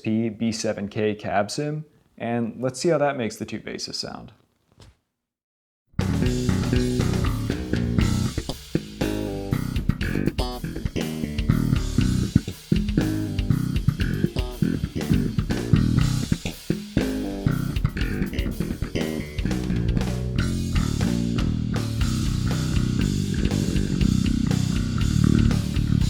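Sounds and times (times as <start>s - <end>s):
drum kit backing: 6.0s - 26.0s
electric bass playing: 6.0s - 26.0s.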